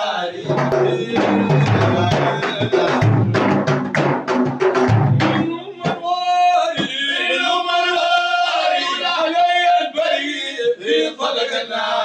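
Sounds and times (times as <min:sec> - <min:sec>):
low group voices: 0:00.0 - 0:03.8
man singing long held line: 0:00.0 - 0:03.8, 0:05.2 - 0:12.0
drums beating fast rhythm: 0:00.4 - 0:06.0.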